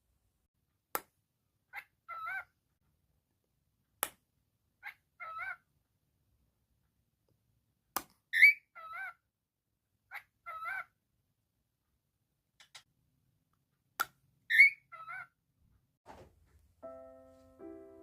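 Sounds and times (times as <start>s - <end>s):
cockatiel whistling: 8.4s - 8.6s, 14.5s - 14.9s.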